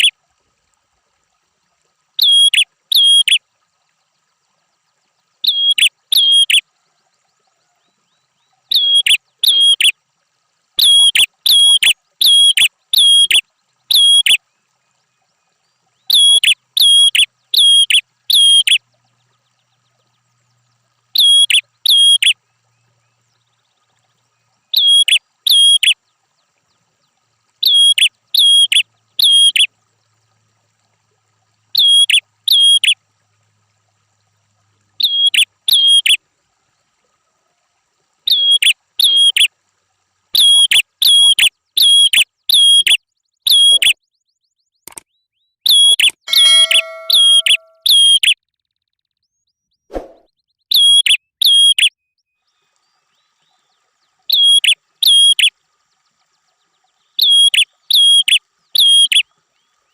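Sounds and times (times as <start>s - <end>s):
bird calling sharp high notes: 46.3s - 48.1s.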